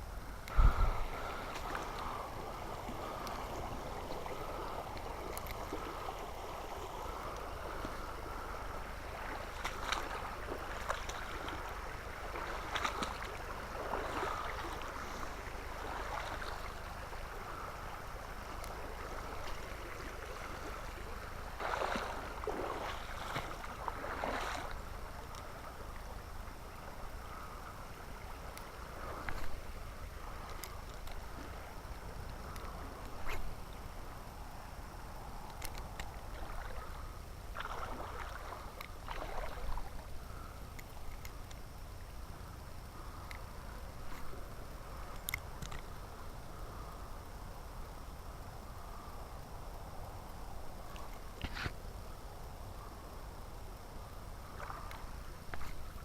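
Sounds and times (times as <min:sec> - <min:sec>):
creek water running over rocks: 0:00.0 - 0:42.7.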